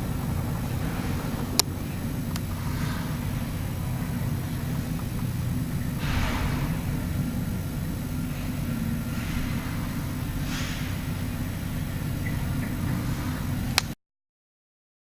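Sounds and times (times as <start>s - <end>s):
diesel engine rumbling: 0.0s - 14.0s
short hisses: 6.0s - 13.6s.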